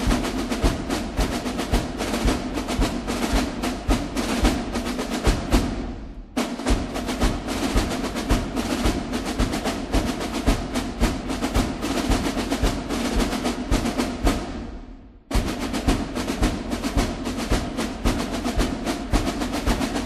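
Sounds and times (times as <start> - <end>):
fast drum and percussion beats: 0.0 - 20.0.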